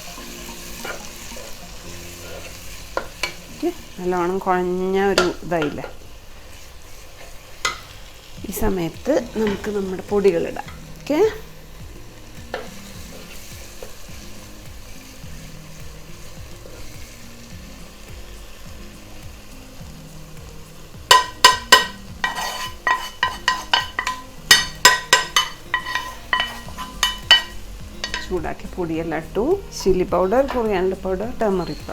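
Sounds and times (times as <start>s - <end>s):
masala sizzling in a pot: 0.0s - 31.9s
metal spoon scraping a pot: 0.7s - 3.4s, 21.1s - 28.4s.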